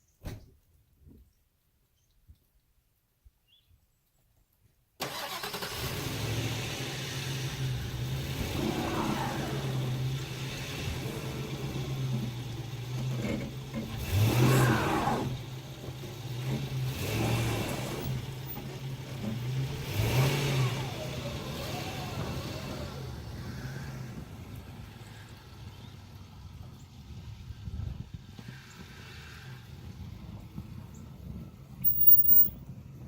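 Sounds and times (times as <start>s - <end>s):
truck engine revving: 5.1s - 24.4s.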